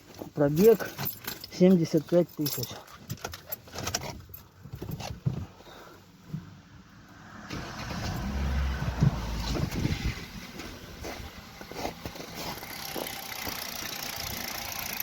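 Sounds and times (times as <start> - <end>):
car engine starting and idling: 5.9 - 15.0.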